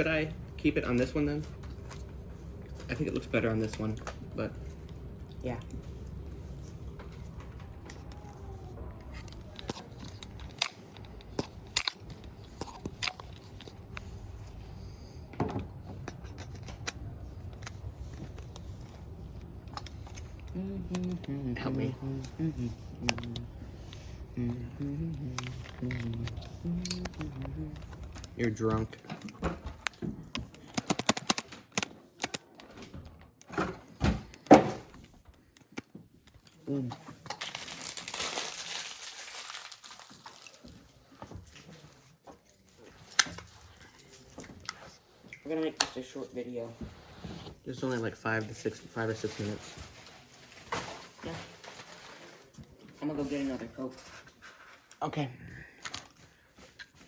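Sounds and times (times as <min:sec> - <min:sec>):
low steady hum: 0:00.0 - 0:57.0
objects clicking and tapping: 0:25.4 - 0:32.8.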